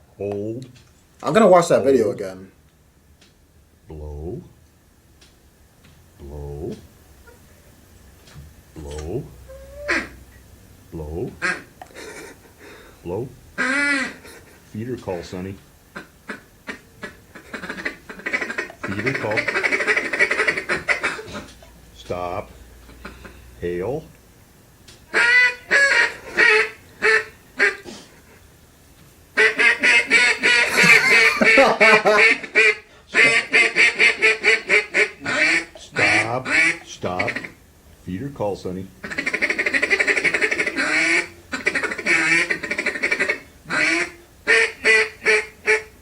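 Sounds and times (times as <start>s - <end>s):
duck call quacks: 9.5s - 10.2s, 11.4s - 12.3s, 13.6s - 14.5s, 16.0s - 21.6s, 25.1s - 28.1s, 29.4s - 37.6s, 39.0s - 46.0s.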